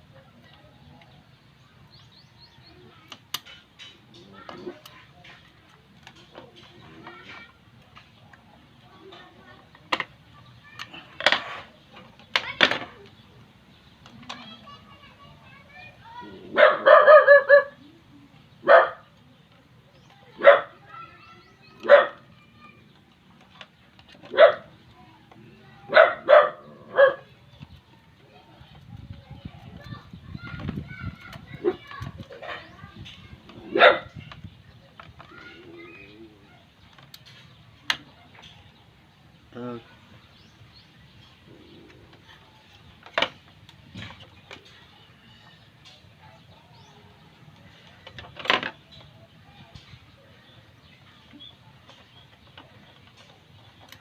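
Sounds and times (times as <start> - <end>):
faint birdsong: 0.0 - 54.0
dog barking: 16.5 - 17.8, 18.6 - 19.1, 20.4 - 20.8, 21.8 - 22.2, 24.3 - 24.7, 25.9 - 27.3, 33.7 - 34.1.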